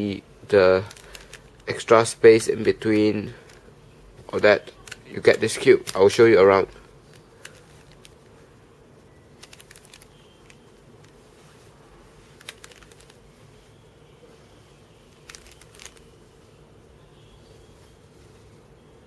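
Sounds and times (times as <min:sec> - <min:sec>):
low steady hum: 0:00.0 - 0:19.0
plastic puzzle cube clicks: 0:15.2 - 0:16.0.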